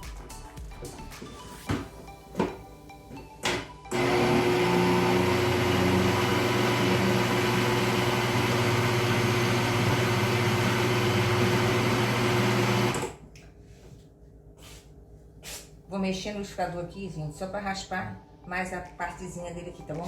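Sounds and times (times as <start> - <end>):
kitchen blender running: 3.9 - 13.2.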